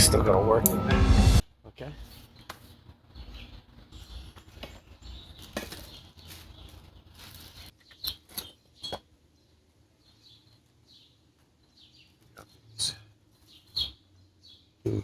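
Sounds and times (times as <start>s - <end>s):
rustling handling noise: 4.4s - 7.9s.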